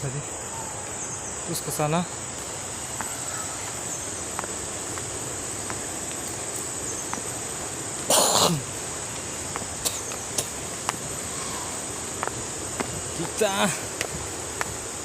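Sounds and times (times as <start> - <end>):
high-pitched insect chorus: 0.0 - 15.0
person sneezing: 8.1 - 8.7.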